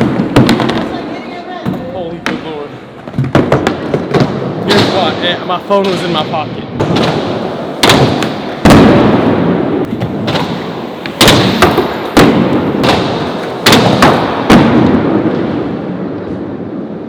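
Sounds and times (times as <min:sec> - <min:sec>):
skateboard landing hard: 0:00.0 - 0:01.0, 0:03.0 - 0:05.1, 0:06.8 - 0:15.9
skateboard wheels rolling: 0:00.0 - 0:06.0, 0:06.8 - 0:17.0.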